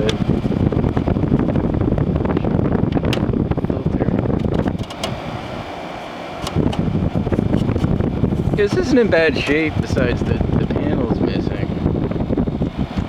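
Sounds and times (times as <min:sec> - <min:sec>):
airflow buffeting microphone: 0:00.0 - 0:13.0
window air conditioner running: 0:00.0 - 0:13.0.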